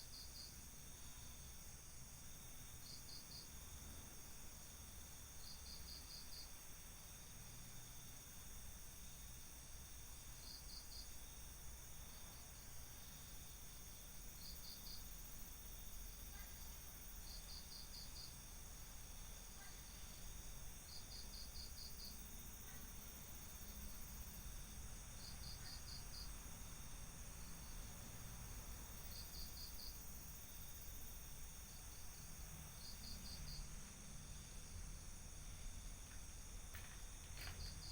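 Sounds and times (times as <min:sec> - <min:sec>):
cricket chirping: 0:00.0 - 0:37.9.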